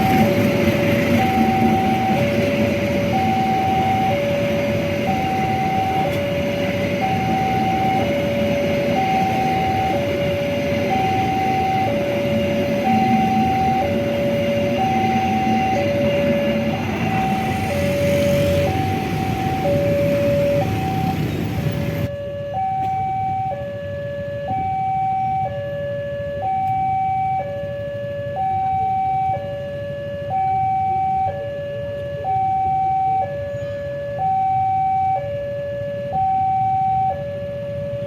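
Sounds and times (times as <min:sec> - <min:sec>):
passing train rumble: 0:00.0 - 0:22.5
level crossing alarm tones: 0:00.0 - 0:38.0.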